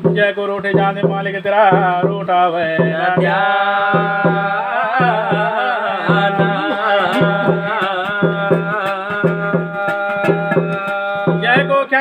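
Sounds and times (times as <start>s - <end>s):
hand drum beat: 0.0s - 12.0s
wavering sung melody: 0.0s - 12.0s.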